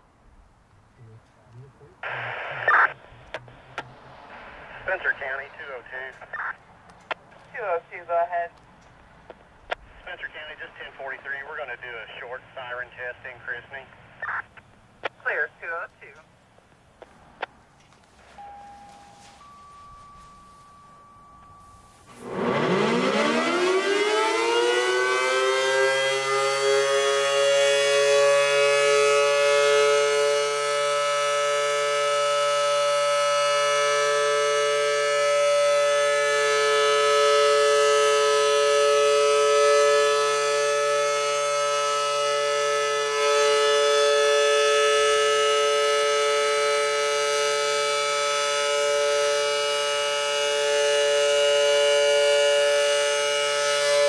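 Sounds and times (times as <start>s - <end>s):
warning siren winding up: 19.4s - 54.0s.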